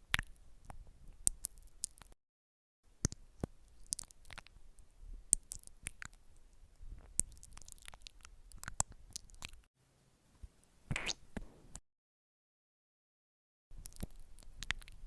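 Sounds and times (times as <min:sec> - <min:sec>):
soft squishy crackling: 0:00.0 - 0:02.2, 0:03.0 - 0:09.7, 0:13.7 - 0:15.0.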